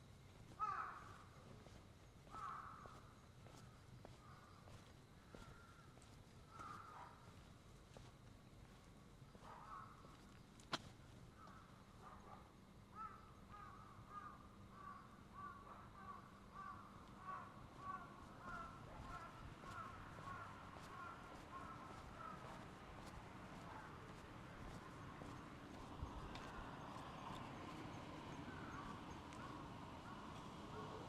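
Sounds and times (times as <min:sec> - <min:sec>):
faint steady hum: 0:00.0 - 0:31.0
crows cawing: 0:00.5 - 0:01.4, 0:02.2 - 0:03.2, 0:04.2 - 0:07.2, 0:09.5 - 0:10.2, 0:11.4 - 0:11.8, 0:12.9 - 0:31.0.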